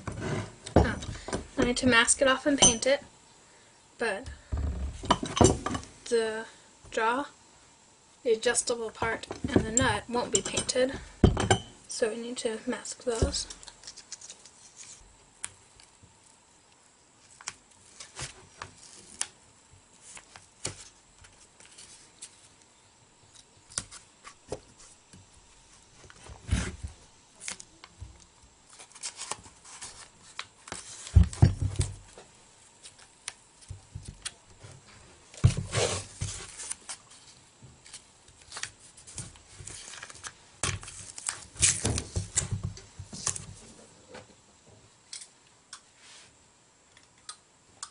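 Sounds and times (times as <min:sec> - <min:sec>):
tape being pulled and torn: 0:17.3 - 0:19.4.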